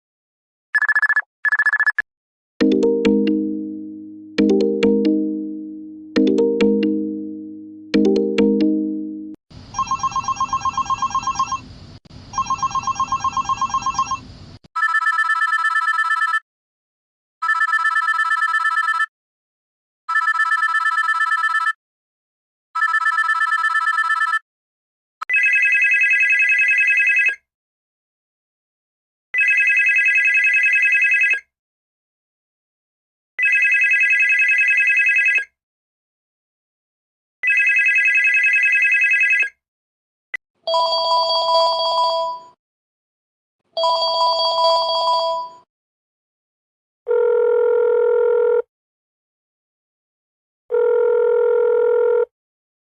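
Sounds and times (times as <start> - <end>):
telephone ringing trill: 0.8 - 2.0, 9.7 - 11.6, 12.3 - 14.2, 14.8 - 16.4, 17.4 - 19.1, 20.1 - 21.8, 22.8 - 24.4, 33.4 - 35.4, 37.4 - 39.5, 40.7 - 42.6, 47.1 - 48.7, 50.7 - 52.3.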